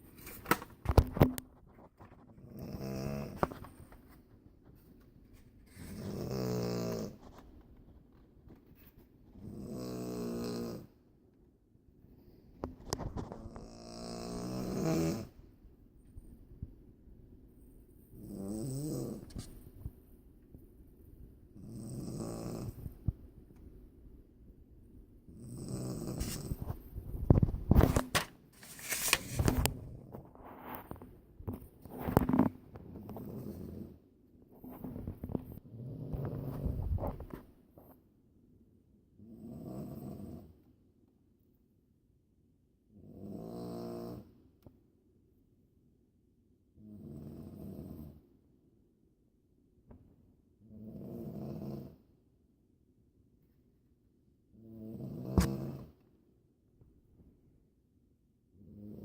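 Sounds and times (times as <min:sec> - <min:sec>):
person snoring: 0:05.9 - 0:07.2.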